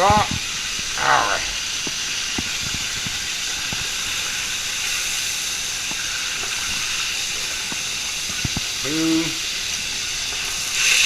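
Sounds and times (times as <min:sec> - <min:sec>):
oil sizzling in a frying pan: 0:00.0 - 0:11.0.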